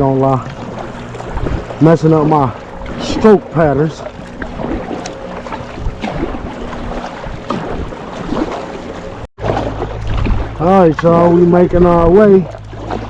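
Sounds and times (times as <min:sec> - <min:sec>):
paddle strokes splashing: 0:00.0 - 0:13.0
water slapping around boat: 0:00.0 - 0:13.0
wind noise on microphone: 0:00.4 - 0:03.5, 0:04.1 - 0:08.7, 0:09.6 - 0:10.7.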